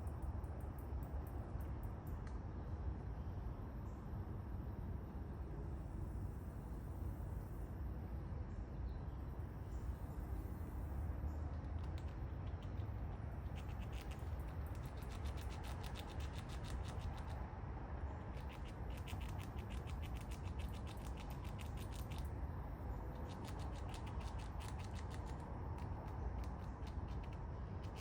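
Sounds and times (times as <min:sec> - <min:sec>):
squirrel gnawing food: 0:11.6 - 0:17.5, 0:18.1 - 0:28.0.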